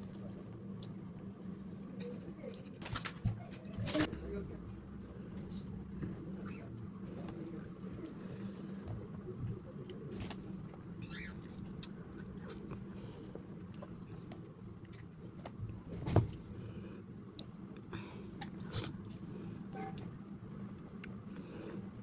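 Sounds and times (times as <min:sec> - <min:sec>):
chewing ice cream: 0:00.0 - 0:02.8, 0:06.4 - 0:15.4, 0:17.2 - 0:22.0.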